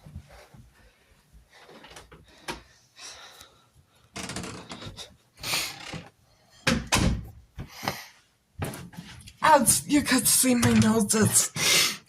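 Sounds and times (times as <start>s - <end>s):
person sniffling: 11.5s - 12.0s.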